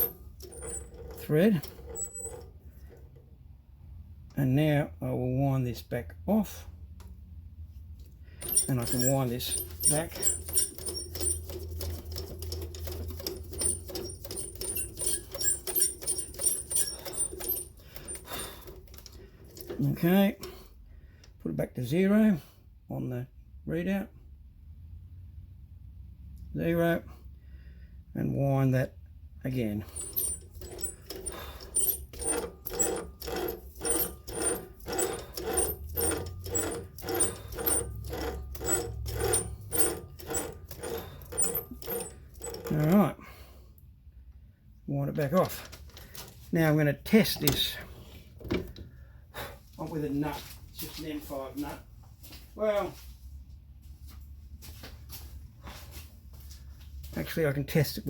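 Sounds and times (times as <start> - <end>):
lathe mechanical clicking: 0.0 - 2.5, 8.4 - 20.0, 30.0 - 43.0.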